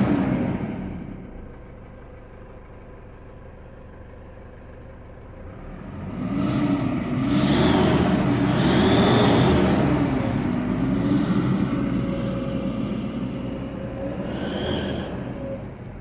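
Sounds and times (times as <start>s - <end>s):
diesel engine idling and revving: 0.0s - 16.0s.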